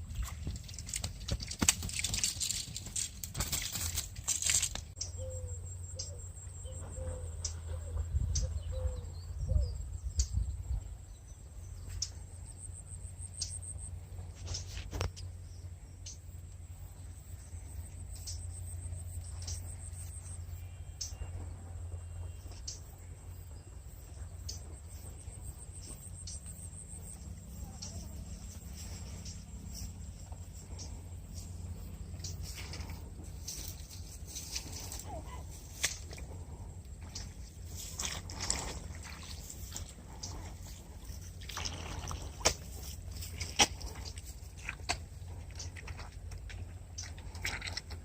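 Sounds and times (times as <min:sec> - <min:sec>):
water trickling and splashing: 0:00.0 - 0:04.9, 0:37.0 - 0:48.0
crickets trilling: 0:00.0 - 0:07.7, 0:11.2 - 0:48.0
low steady rumble: 0:00.0 - 0:48.0.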